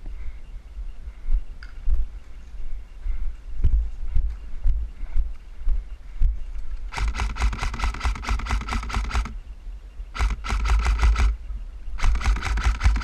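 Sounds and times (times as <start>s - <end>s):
airsoft gun rapid shots: 6.9s - 9.4s, 10.1s - 11.4s, 12.0s - 13.0s.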